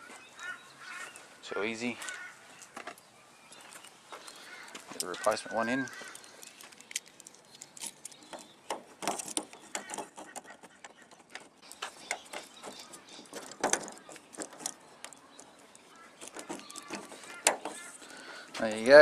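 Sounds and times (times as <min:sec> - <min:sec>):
lock clicks and rattles: 0:05.0 - 0:17.8.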